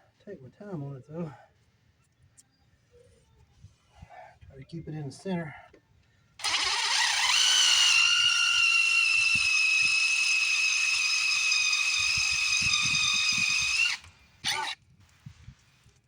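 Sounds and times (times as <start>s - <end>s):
power drill whining: 6.4s - 14.8s.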